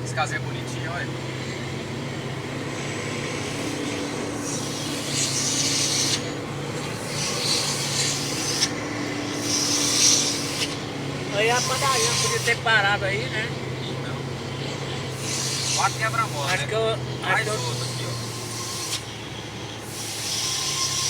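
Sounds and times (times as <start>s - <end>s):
rasping hiss: 0.0s - 21.0s
truck engine running: 0.0s - 21.0s.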